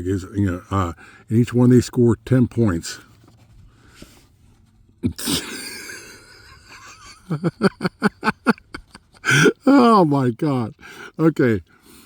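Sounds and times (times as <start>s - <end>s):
man gasping: 9.2s - 9.8s.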